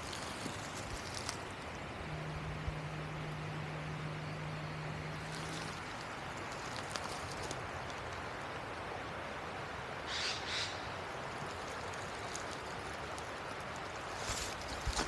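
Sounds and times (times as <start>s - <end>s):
steady outdoor hiss: 0.0s - 15.0s
bird harsh calls: 10.1s - 11.0s.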